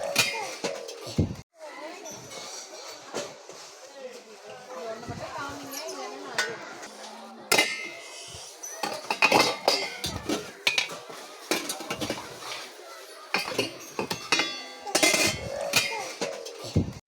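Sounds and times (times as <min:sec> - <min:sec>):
metal utensils clinking: 0:05.6 - 0:16.8.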